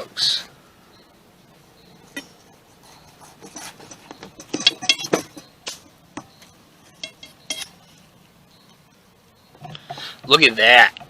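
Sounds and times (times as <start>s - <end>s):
metal cookware clinking: 3.4s - 5.5s, 6.9s - 8.0s.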